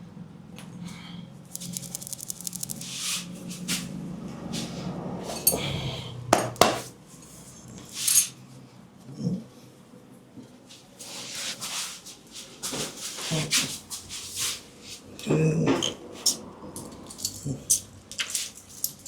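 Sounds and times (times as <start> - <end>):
hands rubbing skin: 1.6 - 3.8.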